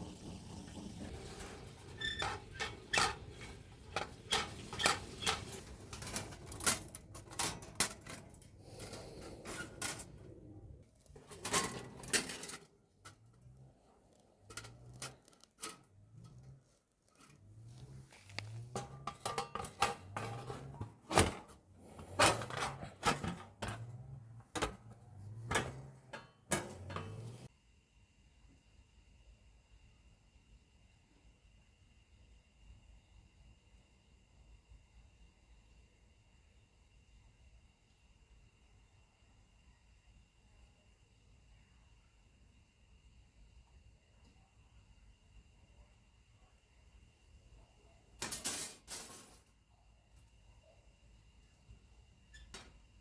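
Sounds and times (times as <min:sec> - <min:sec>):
metal cage trap rattling: 0:01.2 - 0:10.2, 0:11.2 - 0:12.7, 0:18.5 - 0:27.5.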